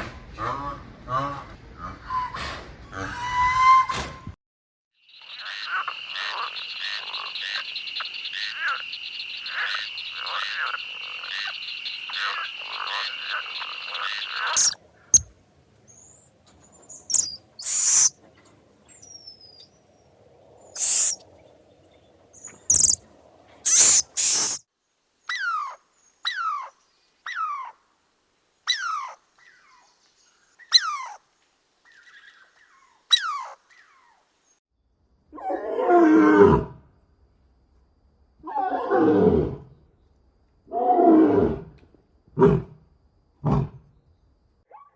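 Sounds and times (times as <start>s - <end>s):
high-pitched animal chorus: 5.1s - 14.8s, 20.7s - 21.2s, 22.7s - 23.0s, 23.7s - 24.6s
rhythmic pulsing animal calls: 5.1s - 14.8s, 20.8s - 21.2s, 23.7s - 24.6s
sharp noisy bursts: 20.8s - 21.2s, 23.7s - 24.6s.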